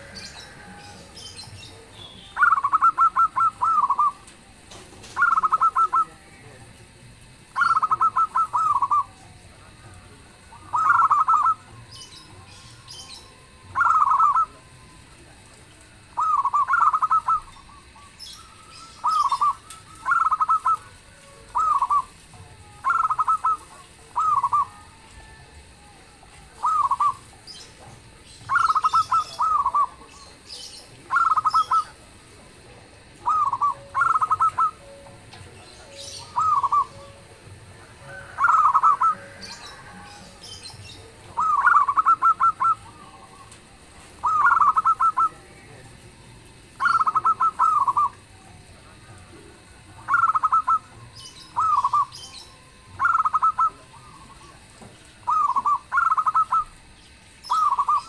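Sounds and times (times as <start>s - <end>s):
faint high bird chirps: 0.0s - 4.4s, 5.0s - 6.2s, 7.5s - 9.6s, 10.5s - 15.2s, 16.1s - 32.0s, 33.2s - 37.3s, 44.2s - 45.4s, 46.3s - 48.3s, 50.1s - 58.0s
dove cooing: 0.0s - 58.0s.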